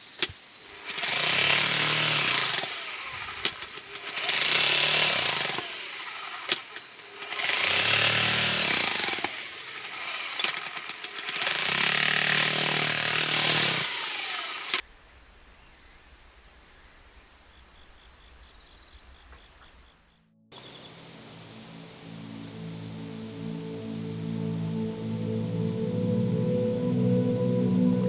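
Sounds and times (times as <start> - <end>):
electric drill boring into soil: 0.8 - 14.8.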